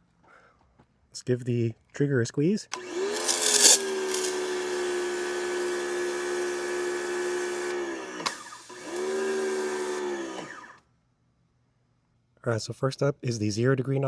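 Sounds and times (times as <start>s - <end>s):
pressure washer motor hum: 2.7s - 10.8s
water jet hissing: 3.0s - 10.5s.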